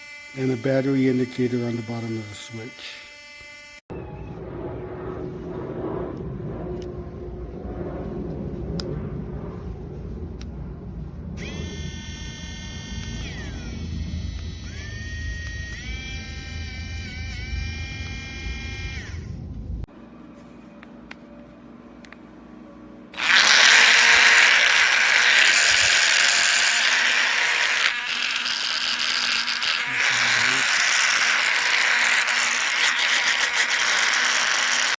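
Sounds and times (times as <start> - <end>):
grinding rasp: 0.0 - 3.6, 23.2 - 34.9
rotary tool motor whining: 0.0 - 3.8, 11.4 - 19.5, 23.2 - 34.9.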